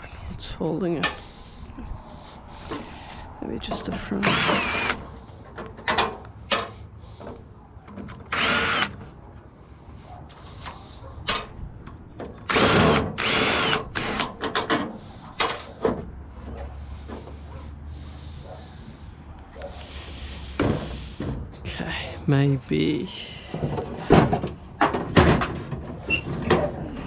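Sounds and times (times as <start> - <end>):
power drill running: 4.2 - 5.1, 8.3 - 9.0, 12.5 - 14.4.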